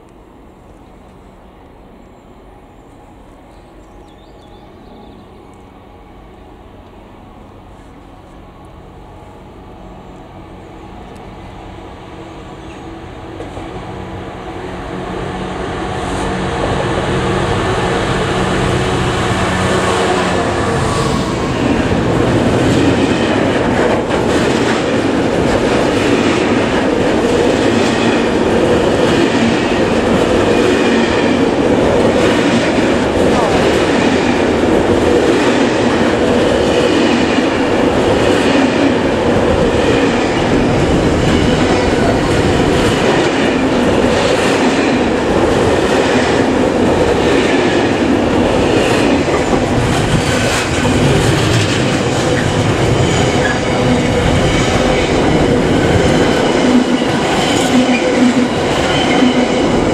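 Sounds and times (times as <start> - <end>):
freight train rumble: 0.0 - 59.9
wheels clacking over rail joints: 48.6 - 59.9.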